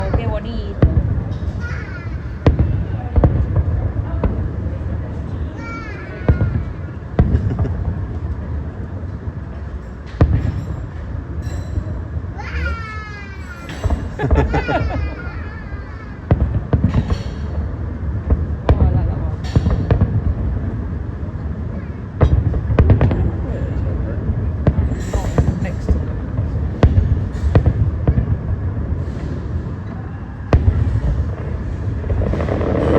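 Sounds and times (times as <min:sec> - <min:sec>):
fireworks bangs: 0:00.0 - 0:12.6, 0:13.4 - 0:32.9
steady low rumble: 0:00.0 - 0:32.9
firework shells bursting: 0:24.3 - 0:29.7, 0:30.5 - 0:32.9.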